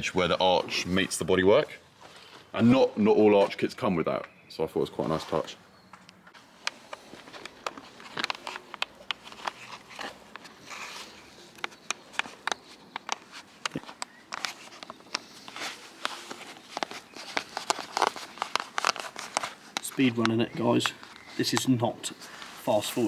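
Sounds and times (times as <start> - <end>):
rustling: 5.0 - 23.0
plastic parts clicking and tapping: 6.1 - 21.8.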